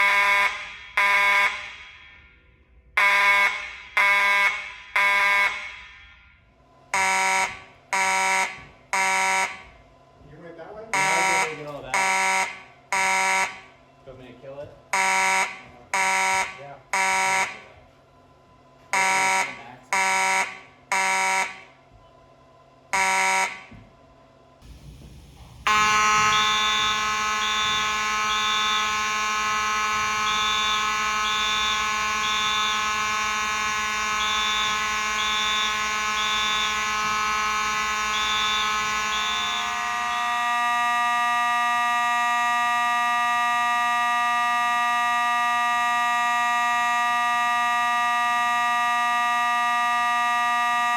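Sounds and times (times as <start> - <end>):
fire alarm horn short blasts: 0.0 - 2.3, 3.0 - 6.2, 7.0 - 9.7, 11.0 - 13.7, 15.0 - 17.7, 19.0 - 21.7, 23.0 - 23.7, 25.6 - 50.9
high three-pulse alarm pattern: 0.0 - 2.4, 3.0 - 6.3, 7.0 - 9.7, 10.9 - 13.7, 14.9 - 17.7, 19.0 - 21.7, 23.0 - 23.7, 25.7 - 50.9
steady continuous alarm tone: 0.0 - 18.0, 18.8 - 21.9, 22.8 - 23.8, 24.6 - 50.9.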